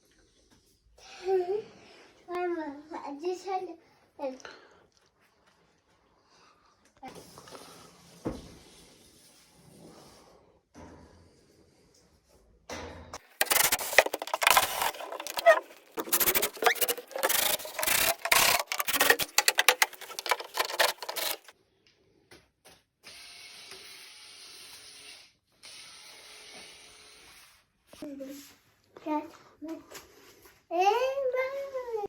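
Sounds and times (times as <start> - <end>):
hand scraping wood: 13.2 - 21.5.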